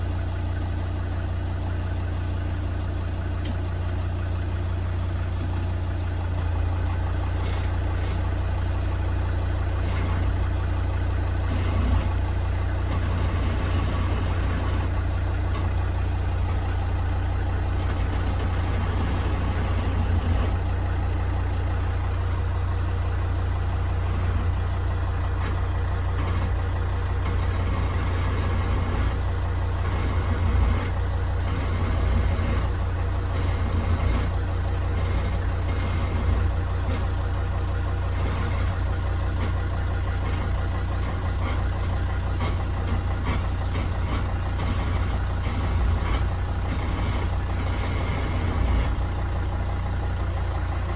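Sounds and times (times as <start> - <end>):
car engine rumble: 0.0 - 50.9.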